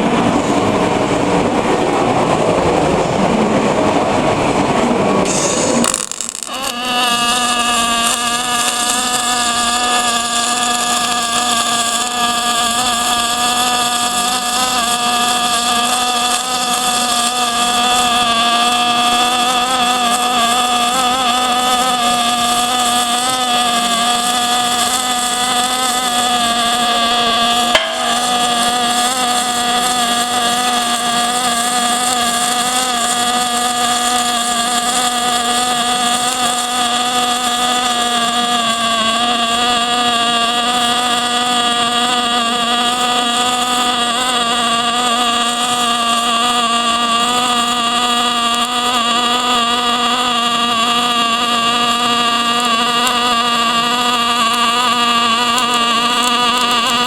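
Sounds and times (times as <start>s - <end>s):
steady machine drone: 0.0s - 57.0s.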